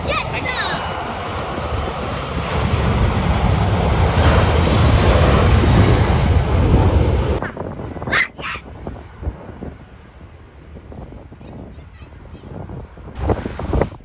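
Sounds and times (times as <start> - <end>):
jet engines running: 0.0 - 14.0
wind on microphone: 0.0 - 14.0
short sharp calls: 8.1 - 8.7.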